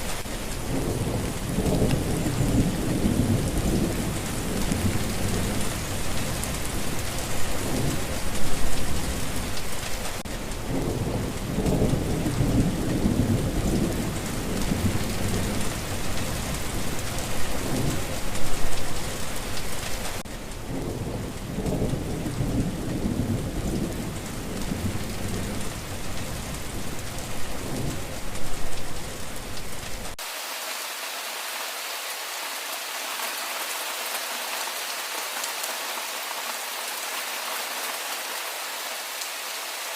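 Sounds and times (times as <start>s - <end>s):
heavy rain: 0.0s - 39.9s
thunder rumbling: 0.1s - 9.8s, 10.4s - 19.4s, 20.1s - 30.2s.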